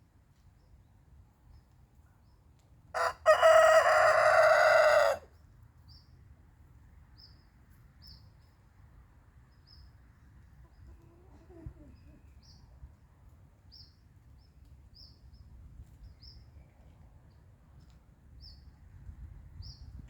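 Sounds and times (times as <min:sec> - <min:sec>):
rooster crowing: 0:03.0 - 0:05.3.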